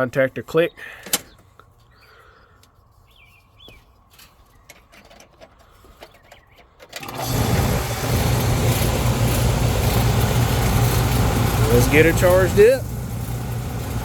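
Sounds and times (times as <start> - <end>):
air conditioner unit humming: 7.0 - 14.0.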